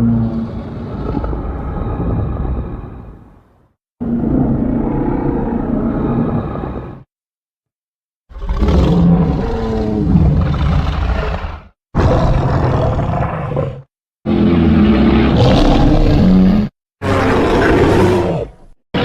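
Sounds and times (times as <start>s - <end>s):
deep rough monster roars: 0.0s - 3.4s, 4.0s - 7.1s, 8.3s - 19.0s.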